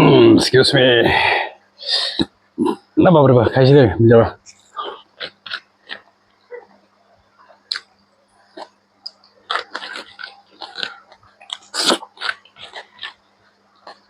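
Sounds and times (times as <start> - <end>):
person chewing: 4.5 - 6.7, 7.4 - 7.9, 8.5 - 14.0
wet mouth clicks and smacks: 7.7 - 7.9, 8.6 - 13.2.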